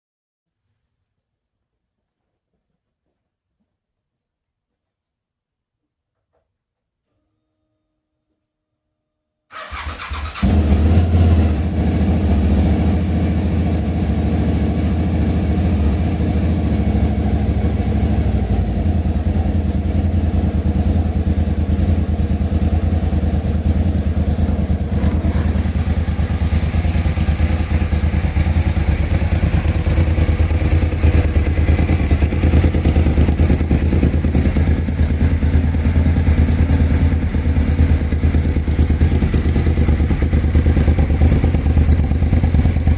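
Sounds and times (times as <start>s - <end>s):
motorcycle engine idling: 9.5s - 42.9s
motorcycle engine starting: 9.5s - 42.9s.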